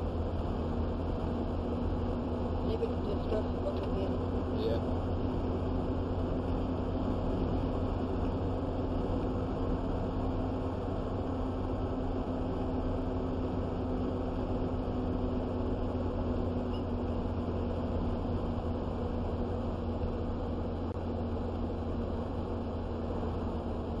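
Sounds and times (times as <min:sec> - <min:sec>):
road noise: 0:00.0 - 0:24.0
truck engine drone: 0:00.0 - 0:24.0
faint steady tone: 0:16.4 - 0:17.6.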